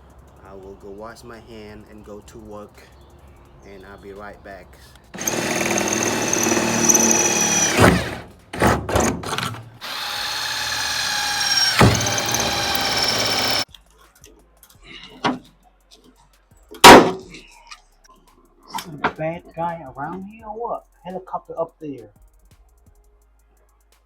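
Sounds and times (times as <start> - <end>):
power drill running: 5.2 - 13.6.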